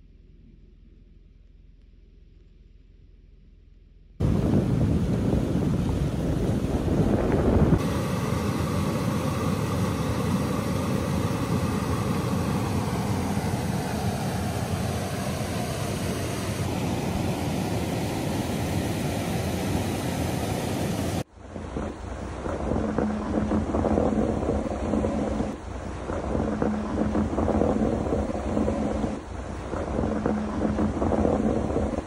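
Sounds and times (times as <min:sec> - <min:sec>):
wind buffeting microphone: 0:04.2 - 0:19.0, 0:21.1 - 0:32.0.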